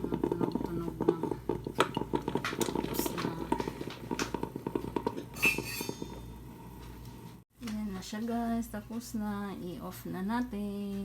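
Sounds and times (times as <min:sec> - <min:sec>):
coffee maker gurgling and sputtering: 0:00.0 - 0:07.2.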